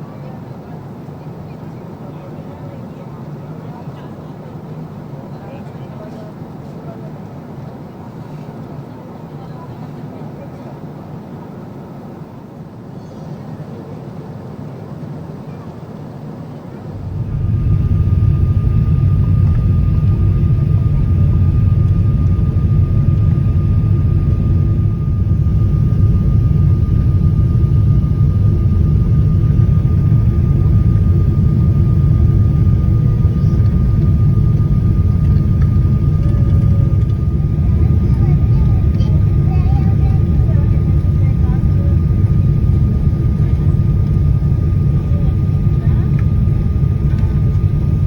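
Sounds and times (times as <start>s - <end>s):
airliner engine rumble: 0.0s - 48.0s
faint steady whine: 16.6s - 48.0s.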